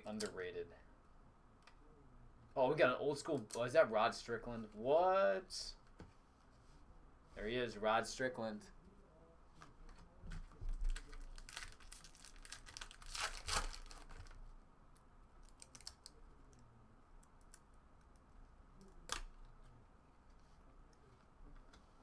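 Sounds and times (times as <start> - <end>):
trading cards rustling: 10.8 - 14.4.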